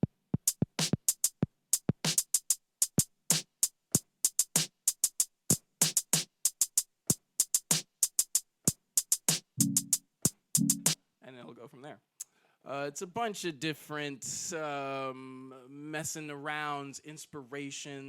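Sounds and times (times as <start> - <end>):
drum machine beat: 0.0 - 11.0.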